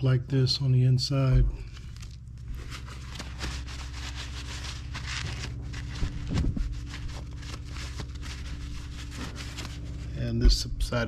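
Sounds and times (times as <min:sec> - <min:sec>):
low machine hum: 0:00.0 - 0:11.0.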